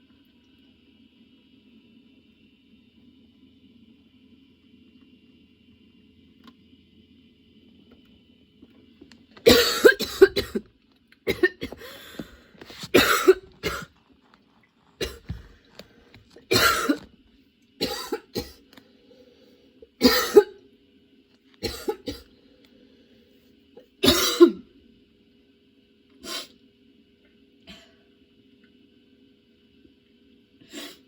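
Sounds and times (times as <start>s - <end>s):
woman coughing: 9.5s - 10.6s, 11.3s - 12.2s, 12.8s - 13.9s, 15.0s - 15.4s, 16.5s - 17.1s, 17.8s - 18.6s, 20.0s - 20.6s, 21.6s - 22.3s, 24.0s - 24.7s.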